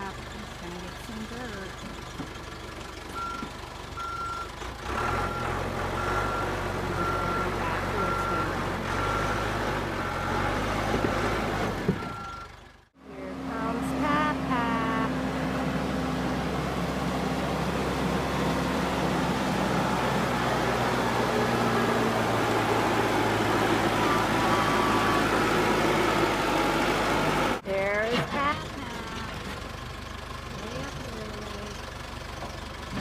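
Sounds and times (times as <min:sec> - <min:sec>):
backhoe engine running: 0:00.0 - 0:33.0
reversing alarm beeping: 0:03.2 - 0:04.5, 0:05.2 - 0:10.6, 0:12.0 - 0:12.6, 0:24.0 - 0:26.1.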